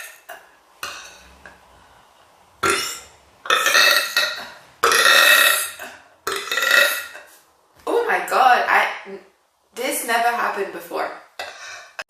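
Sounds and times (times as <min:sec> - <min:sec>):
woman burping: 0:02.6 - 0:07.2.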